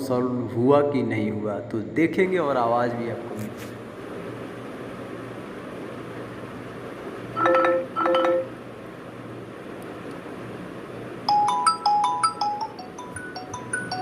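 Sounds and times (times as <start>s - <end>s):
marimba-like ringtone: 7.4s - 8.5s, 11.3s - 14.0s.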